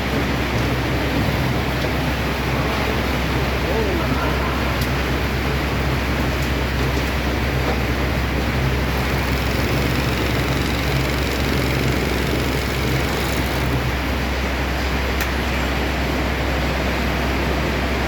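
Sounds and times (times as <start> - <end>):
baling press machinery humming: 6.6 - 15.2.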